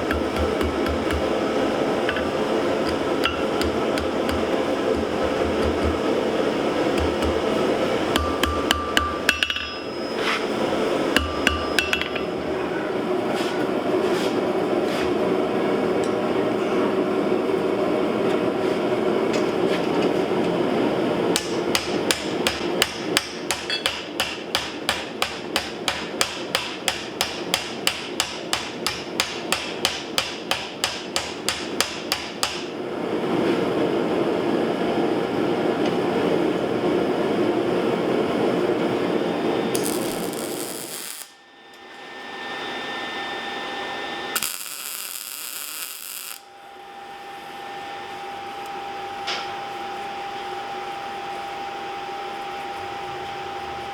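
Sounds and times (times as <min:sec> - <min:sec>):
hammer striking steel on anvil: 0:00.0 - 0:12.4, 0:21.4 - 0:32.8.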